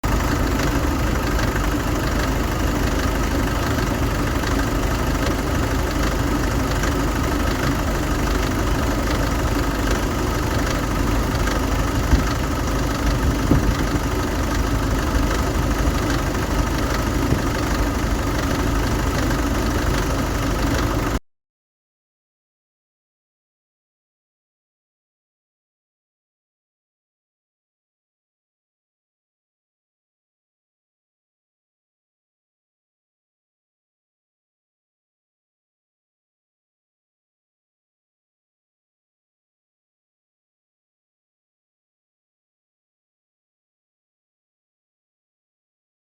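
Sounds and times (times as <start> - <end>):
diesel engine idling: 0.0 - 21.2.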